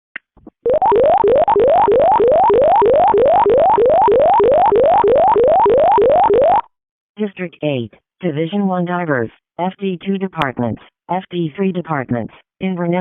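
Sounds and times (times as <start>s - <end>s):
electronic whooping alert tone: 0.7s - 6.7s.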